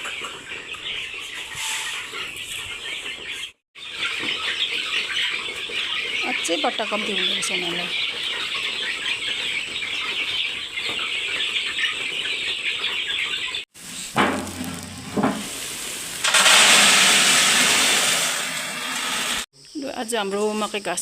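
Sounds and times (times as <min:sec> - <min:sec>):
chicks peeping: 0:00.0 - 0:15.0
loud even hiss: 0:13.8 - 0:19.5.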